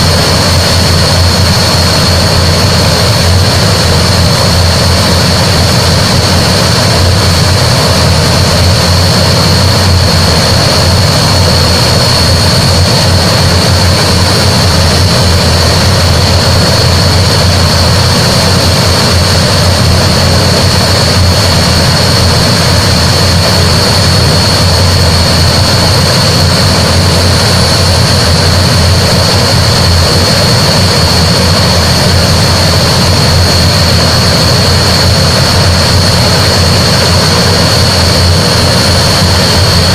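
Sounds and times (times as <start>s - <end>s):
turboprop engines whining: 0.0s - 39.9s.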